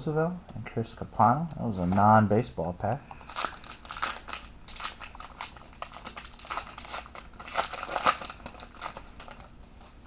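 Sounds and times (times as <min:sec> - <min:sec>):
card pack wrapper crinkling and tearing: 0:03.1 - 0:09.6.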